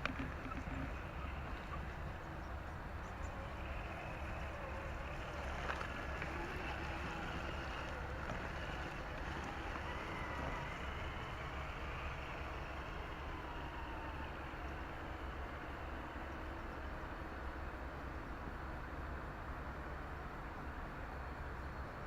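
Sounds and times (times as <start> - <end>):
small electric motor whining: 0.0 - 18.2
background rumble: 0.0 - 18.5.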